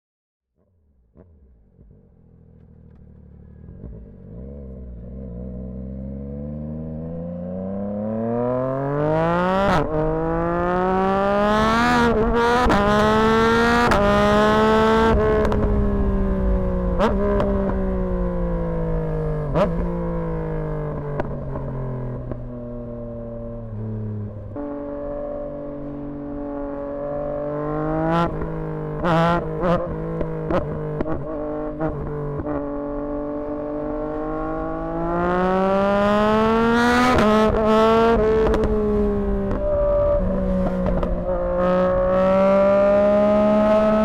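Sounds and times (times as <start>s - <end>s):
motorcycle engine revving: 0.6s - 44.0s
exhaust pops and crackles: 15.1s - 20.3s, 20.9s - 22.5s, 38.4s - 41.4s.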